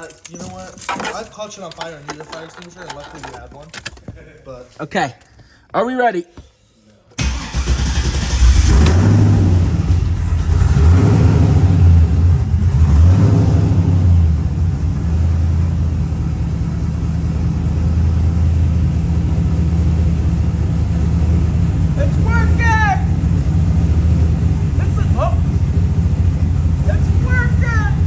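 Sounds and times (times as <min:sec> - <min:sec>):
car engine revving and idling: 0:07.2 - 0:28.0.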